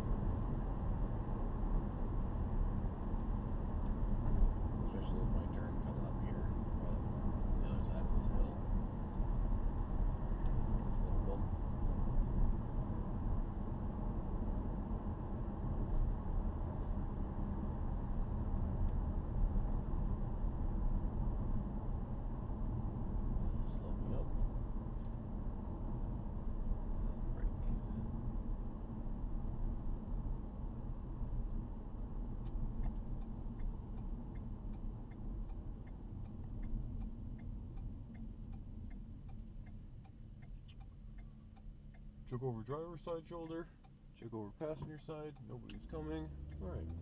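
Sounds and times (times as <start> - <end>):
car cabin road and exhaust drone: 0.0 - 47.0
turn signal clicking: 32.3 - 47.0.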